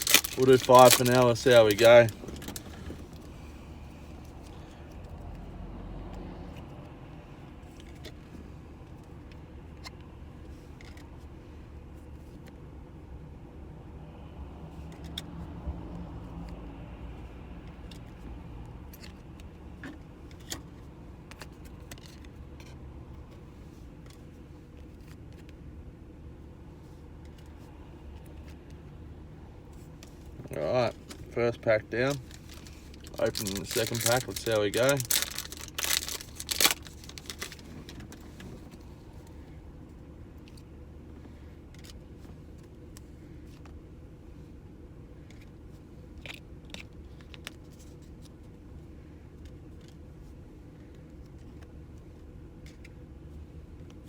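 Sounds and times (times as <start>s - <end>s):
card packet tearing and crinkling: 0.0s - 3.2s, 32.0s - 38.2s
steady low hum in car cabin: 0.0s - 54.0s.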